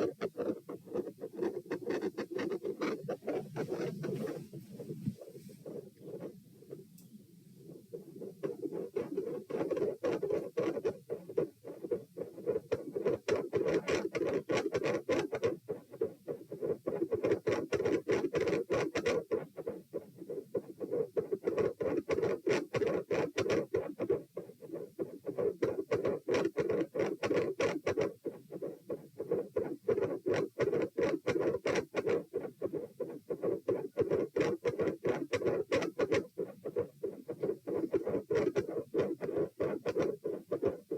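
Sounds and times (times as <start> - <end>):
heartbeat: 0.0 - 6.8, 19.3 - 40.9.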